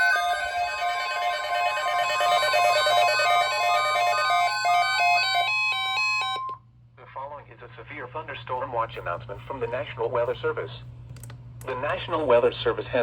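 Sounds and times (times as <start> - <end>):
steady high alarm tone: 0.0 - 6.6.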